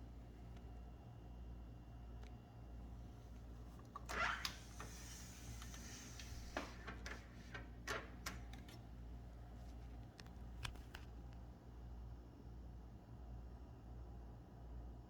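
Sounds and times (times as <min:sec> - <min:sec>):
typewriter carriage sliding: 0:04.0 - 0:08.8.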